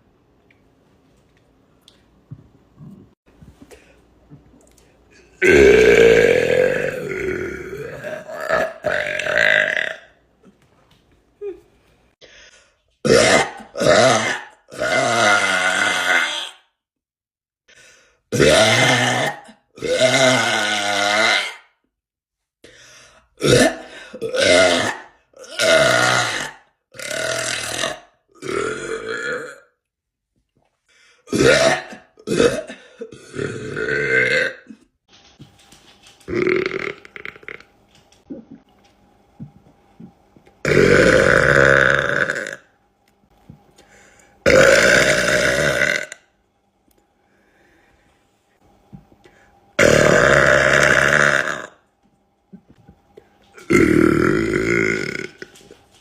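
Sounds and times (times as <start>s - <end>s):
woman burping: 5.3s - 10.2s, 13.0s - 16.5s, 18.3s - 21.6s, 23.4s - 29.7s, 31.3s - 34.9s, 40.6s - 42.6s, 44.5s - 46.2s, 49.8s - 51.8s, 53.6s - 55.5s.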